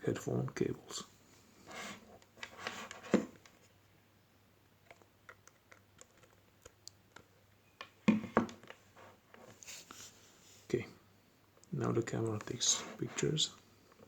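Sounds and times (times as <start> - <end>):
rustling and scraping of plug: 1.7 - 3.7.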